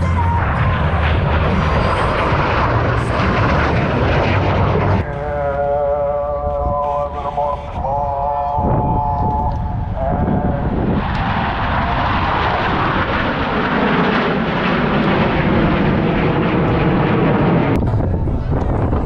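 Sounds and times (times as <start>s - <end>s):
jet roaring past: 0.0s - 19.0s.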